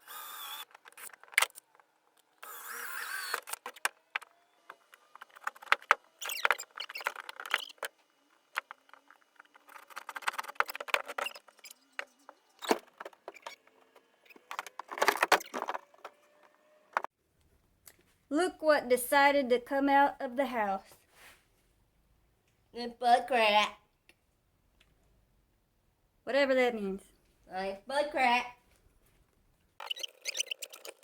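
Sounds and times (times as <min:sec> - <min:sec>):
knocks and rattles of handling: 0:03.6 - 0:17.1.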